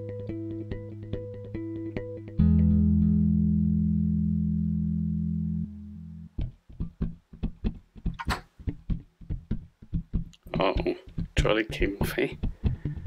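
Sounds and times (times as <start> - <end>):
bass and guitar chord: 0.0 - 6.3.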